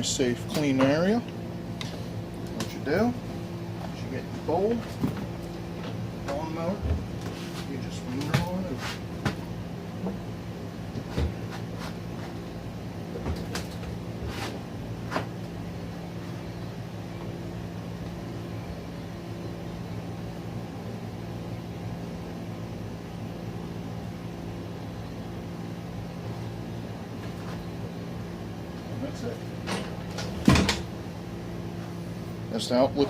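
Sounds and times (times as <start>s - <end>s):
steady low hum: 0.0s - 33.0s.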